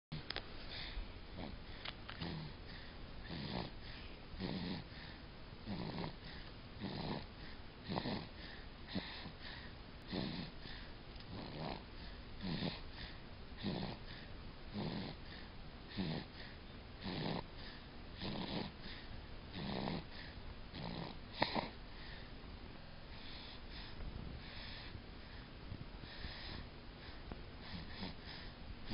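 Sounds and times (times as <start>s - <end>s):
rasping snores: 2.2s - 2.6s, 3.3s - 3.8s, 4.4s - 5.0s, 5.7s - 7.3s, 7.9s - 8.3s, 10.1s - 10.6s, 11.3s - 11.8s, 12.4s - 12.8s, 13.6s - 14.0s, 14.7s - 15.2s, 15.9s - 16.4s, 17.0s - 17.5s, 18.2s - 18.8s, 19.5s - 20.1s, 20.8s - 21.8s, 27.7s - 28.9s.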